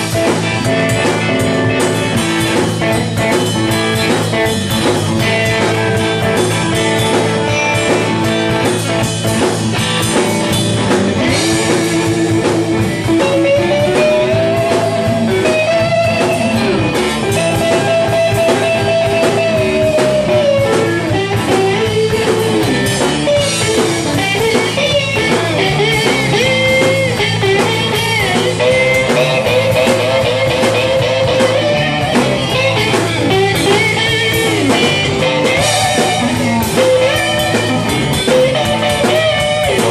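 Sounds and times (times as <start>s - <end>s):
blues band playing live: 0.0s - 39.9s
electric guitar lead with bent notes: 0.0s - 39.9s.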